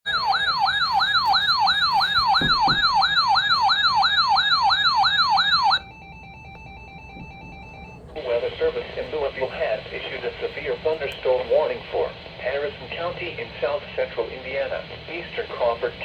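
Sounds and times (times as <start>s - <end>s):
electronic siren yelping: 0.0s - 8.2s.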